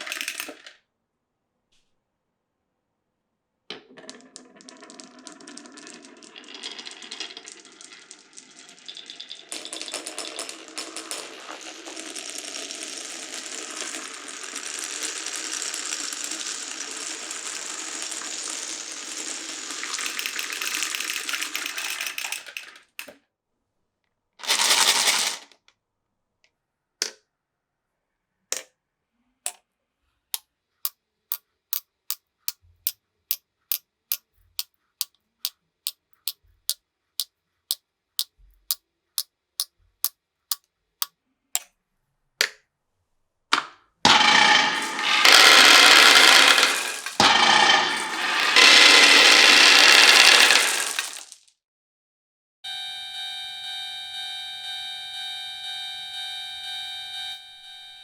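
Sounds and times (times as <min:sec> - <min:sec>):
marbles rattling along tracks: 0:00.0 - 0:00.8, 0:03.9 - 0:23.2, 0:24.4 - 0:25.5, 0:44.1 - 0:51.5.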